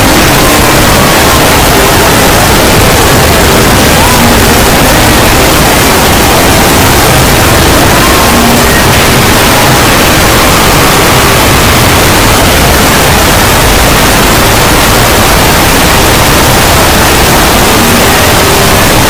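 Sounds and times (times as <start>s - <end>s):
distorted blaring noise: 0.0s - 19.0s.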